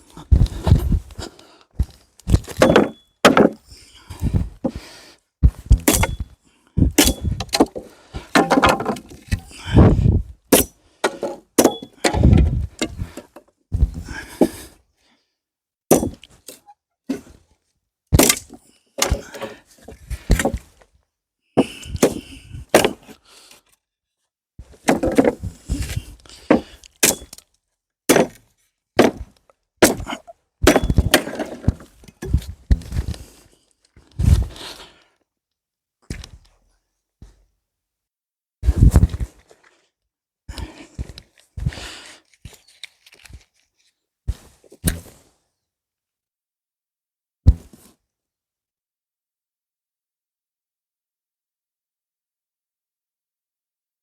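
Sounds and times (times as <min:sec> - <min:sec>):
sharp cracks and knocks: 0:18.1 - 0:19.2.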